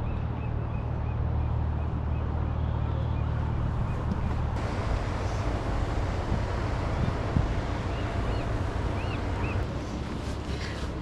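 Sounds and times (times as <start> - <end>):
wind buffeting microphone: 3.4 - 9.7.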